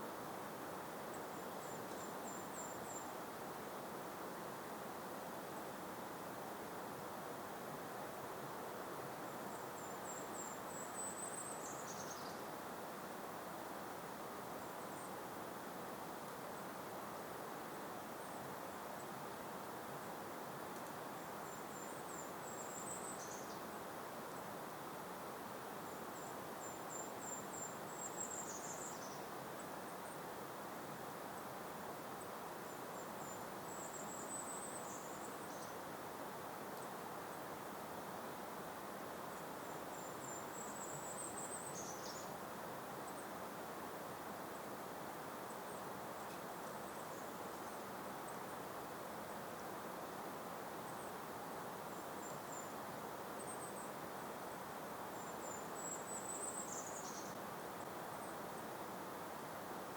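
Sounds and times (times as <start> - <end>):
gentle breeze: 0.0 - 59.9
small bird singing: 9.5 - 12.5, 21.4 - 23.8, 26.2 - 29.4, 32.2 - 35.8, 39.7 - 42.4, 55.1 - 57.4.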